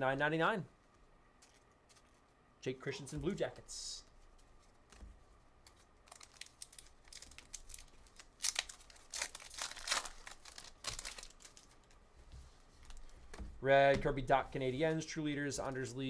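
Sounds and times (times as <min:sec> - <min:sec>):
card pack wrapper tearing: 0:05.7 - 0:12.0.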